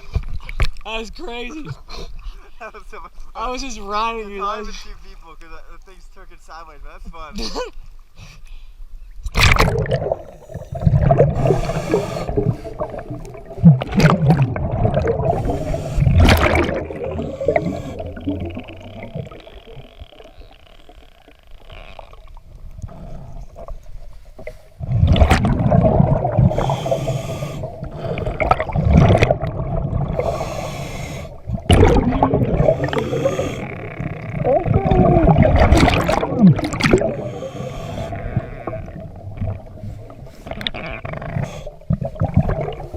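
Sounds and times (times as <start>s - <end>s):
gurgling exhaled bubbles: 9.3s - 42.9s
regulator inhalation hiss: 11.4s - 12.8s, 17.1s - 18.2s, 26.5s - 28.2s, 30.2s - 31.5s, 32.6s - 33.8s, 37.1s - 38.2s.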